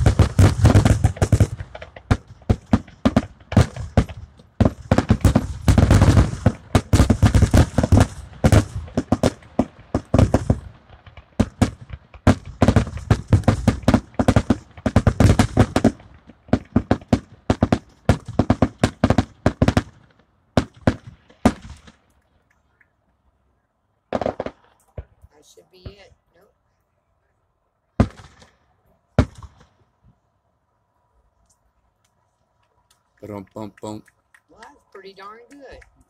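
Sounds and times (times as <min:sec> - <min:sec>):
fireworks booming and crackling: 0:00.0 - 0:22.1, 0:24.1 - 0:26.1, 0:28.0 - 0:30.0.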